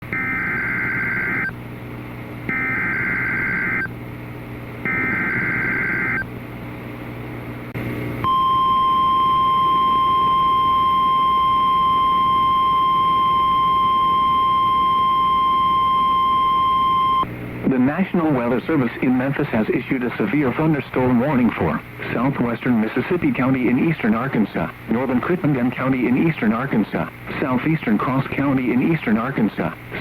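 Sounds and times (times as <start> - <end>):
high warning alarm tone: 2.5 - 3.9, 4.9 - 6.3, 8.2 - 17.2.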